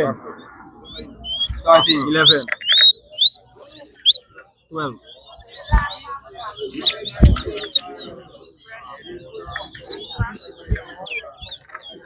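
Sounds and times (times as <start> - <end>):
songbirds chirping and whistling: 0.0 - 12.0
dull thumps: 7.1 - 7.8, 9.5 - 11.6.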